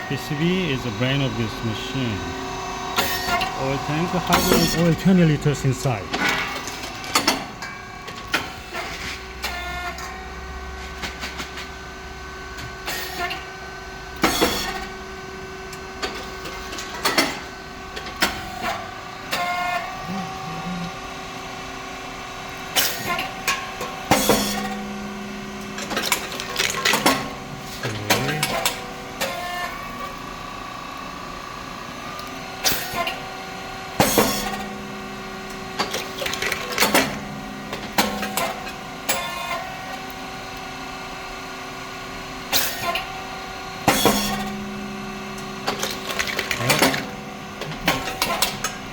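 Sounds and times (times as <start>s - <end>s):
machine motor hum: 0.0s - 6.7s, 24.2s - 29.2s, 43.6s - 48.9s.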